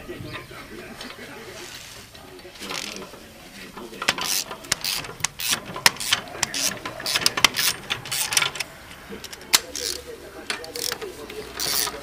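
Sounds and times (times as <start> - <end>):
hand tools clinking: 2.4 - 12.0
ratchet wrench clicking: 4.0 - 12.0.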